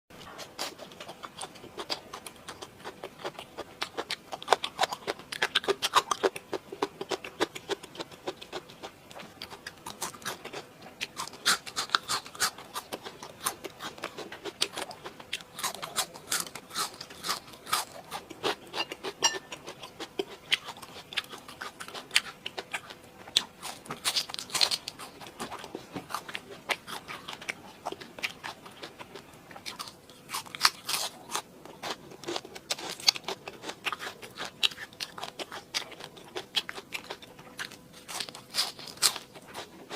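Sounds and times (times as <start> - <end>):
person chewing crunchy food: 0.2 - 39.9.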